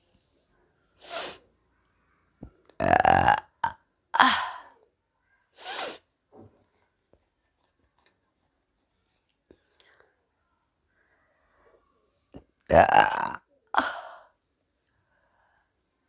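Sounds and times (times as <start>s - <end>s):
woman burping: 2.8s - 4.7s, 12.7s - 14.3s.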